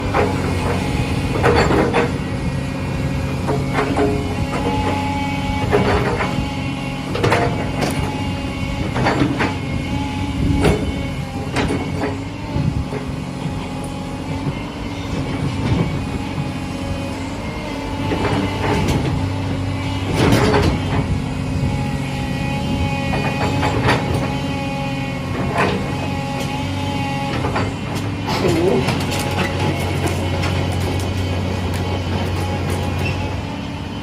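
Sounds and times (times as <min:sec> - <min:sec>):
excavator diesel engine running: 0:00.0 - 0:34.0
sharp metal knocks and clanks: 0:00.1 - 0:02.2.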